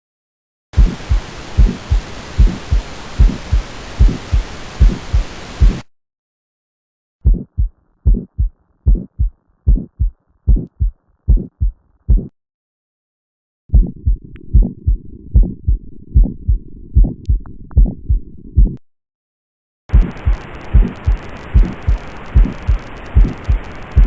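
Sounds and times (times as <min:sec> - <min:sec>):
heartbeat lub-dub: 0:00.8 - 0:05.8, 0:07.2 - 0:12.3, 0:13.7 - 0:18.8, 0:19.9 - 0:24.0
low hiss: 0:00.8 - 0:05.8, 0:19.9 - 0:24.0.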